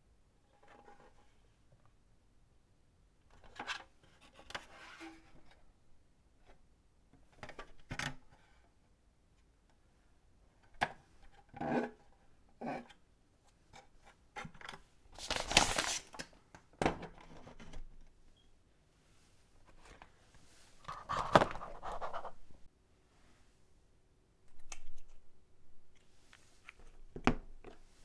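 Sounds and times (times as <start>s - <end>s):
packaging scraping and rustling: 15.2s - 16.2s, 20.7s - 22.7s.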